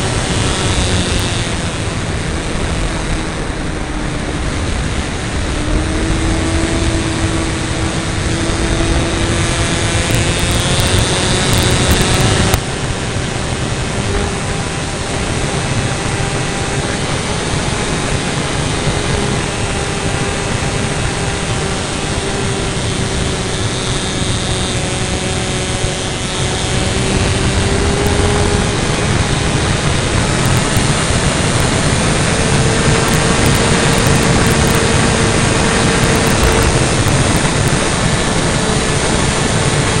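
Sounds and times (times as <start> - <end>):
model airplane engine and propeller: 0.0 - 40.0.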